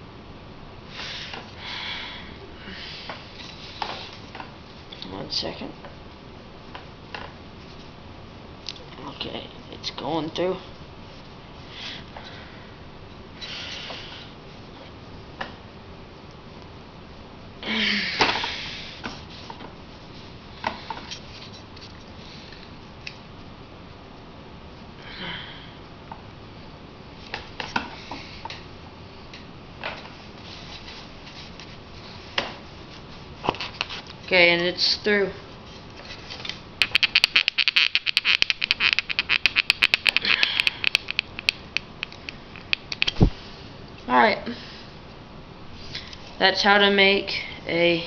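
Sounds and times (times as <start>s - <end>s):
hand drill clicking and scraping: 36.8s - 43.2s.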